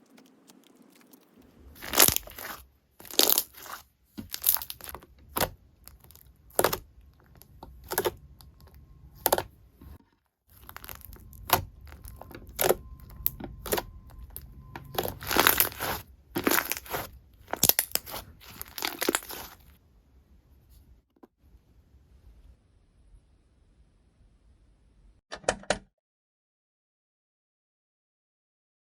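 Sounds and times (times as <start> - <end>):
slime crackling and popping: 0.0 - 9.5, 10.6 - 19.8.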